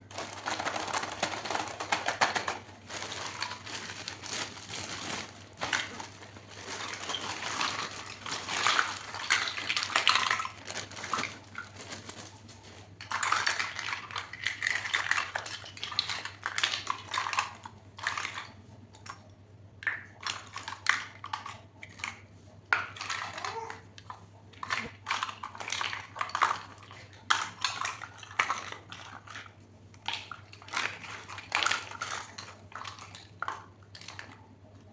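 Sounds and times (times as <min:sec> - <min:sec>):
packaging rustling: 0:00.0 - 0:14.1.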